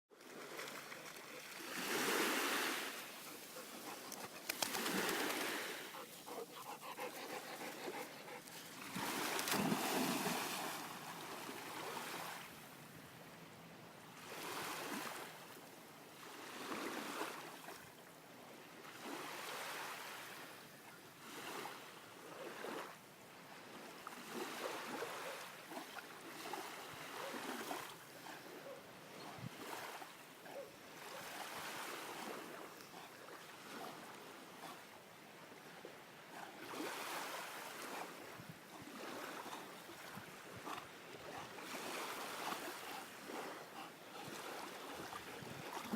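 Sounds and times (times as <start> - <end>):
waves washing on a shoreline: 0.2 - 45.9.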